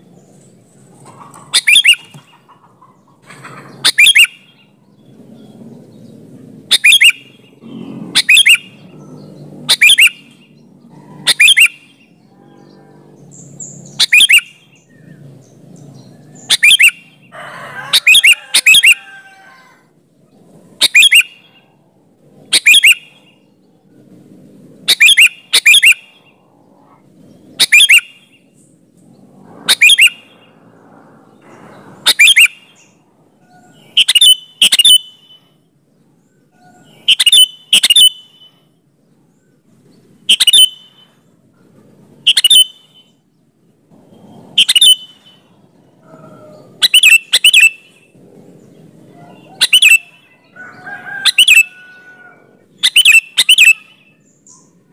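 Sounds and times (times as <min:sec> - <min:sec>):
bird calling sharp notes: 0:01.1 - 0:04.8, 0:06.7 - 0:15.3, 0:16.0 - 0:19.9, 0:20.7 - 0:21.8, 0:22.4 - 0:23.5, 0:24.8 - 0:28.6, 0:29.4 - 0:35.6, 0:36.4 - 0:38.7, 0:40.2 - 0:41.2, 0:42.2 - 0:43.2, 0:44.0 - 0:54.8.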